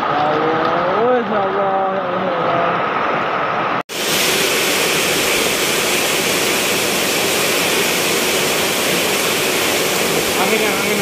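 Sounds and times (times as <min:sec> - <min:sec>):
heavy rain: 0:03.8 - 0:11.0.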